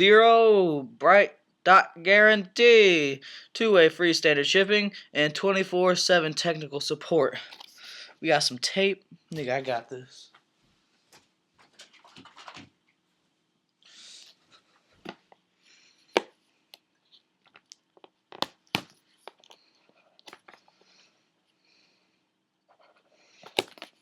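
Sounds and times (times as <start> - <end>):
tape crinkling and scraping: 17.0 - 20.8, 22.7 - 24.0.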